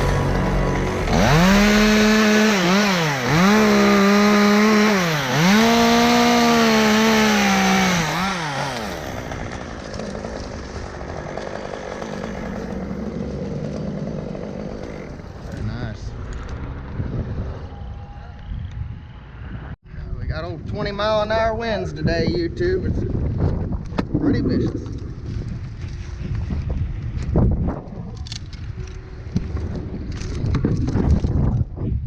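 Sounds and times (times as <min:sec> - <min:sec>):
chainsaw at full throttle: 0:00.0 - 0:15.3.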